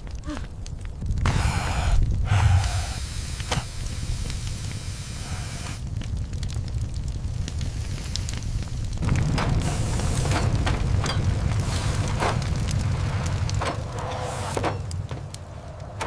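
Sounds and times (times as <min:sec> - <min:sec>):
fire crackling and hissing: 0:00.0 - 0:16.0.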